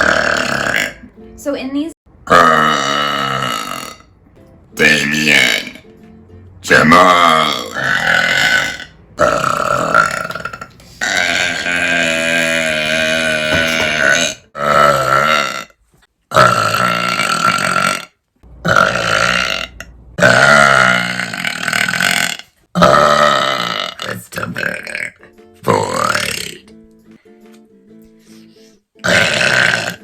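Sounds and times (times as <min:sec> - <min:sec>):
woman burping: 0:00.0 - 0:01.1, 0:02.3 - 0:04.1, 0:07.2 - 0:24.0, 0:29.0 - 0:30.0.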